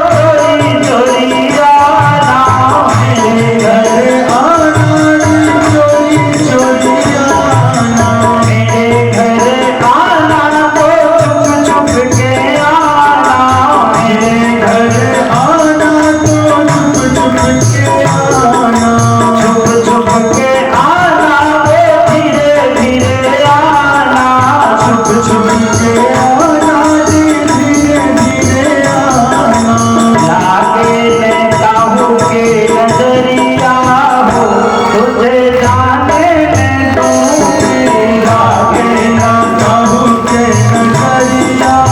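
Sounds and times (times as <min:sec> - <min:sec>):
steady drum beat: 0:00.0 - 0:41.9.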